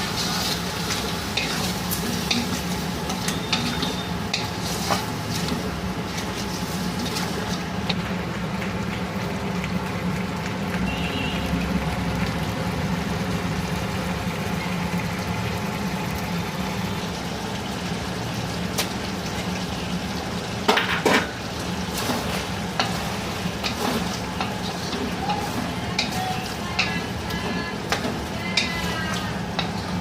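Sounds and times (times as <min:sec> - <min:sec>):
spoon scraping a pan: 0:00.0 - 0:05.6, 0:22.8 - 0:29.9
gravy sizzling in a pan: 0:00.0 - 0:30.0.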